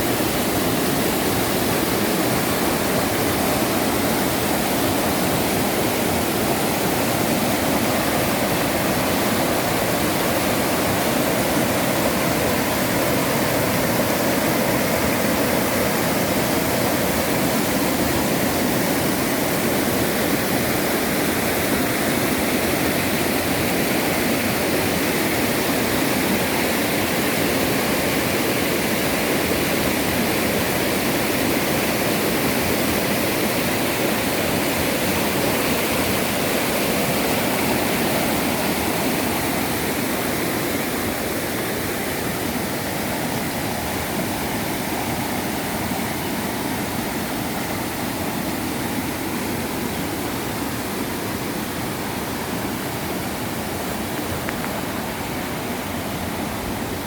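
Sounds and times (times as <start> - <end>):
rushing water: 0.0 - 57.0.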